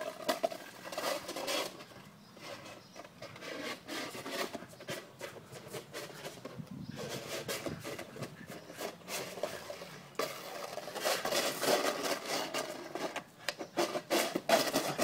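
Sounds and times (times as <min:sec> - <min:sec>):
plastic dish scraping on floor: 0:08.8 - 0:15.0.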